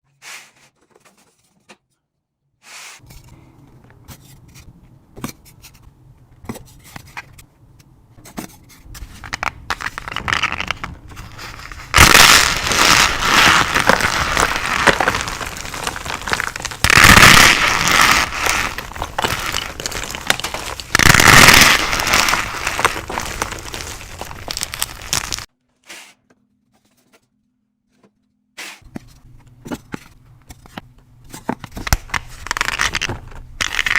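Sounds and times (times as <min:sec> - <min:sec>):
chalk crunching and crumbling: 0:08.7 - 0:25.5.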